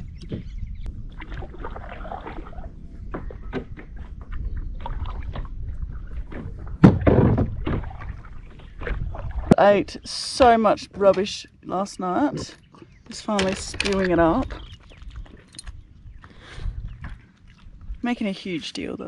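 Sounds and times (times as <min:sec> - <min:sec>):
splashing water: 0:01.0 - 0:11.4, 0:12.0 - 0:19.0
paddle knocking on hull: 0:06.2 - 0:09.6.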